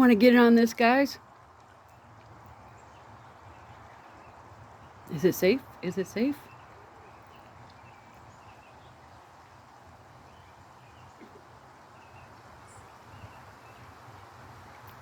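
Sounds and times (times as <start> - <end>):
faint outdoor hiss: 0.0 - 15.0.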